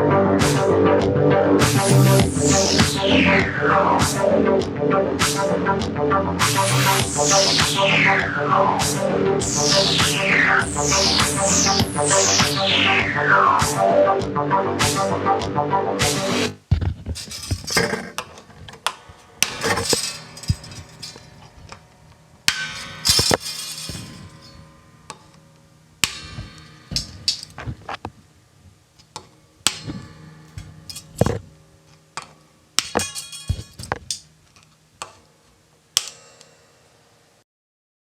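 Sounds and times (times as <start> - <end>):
sharp struck ringing notes: 19.0 - 27.8.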